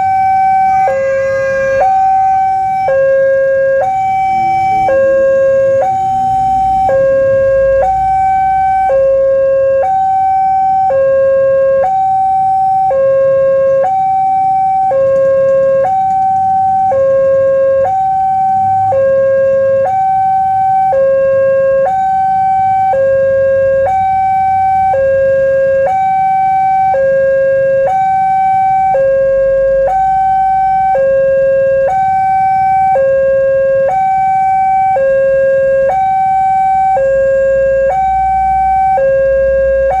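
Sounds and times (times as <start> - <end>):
level crossing two-tone alarm: 0.0 - 40.0.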